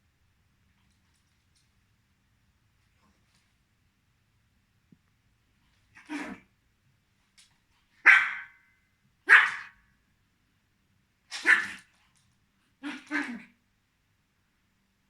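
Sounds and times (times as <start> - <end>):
small dog barking: 6.0 - 6.5, 8.0 - 9.8, 11.3 - 11.9, 12.8 - 13.6.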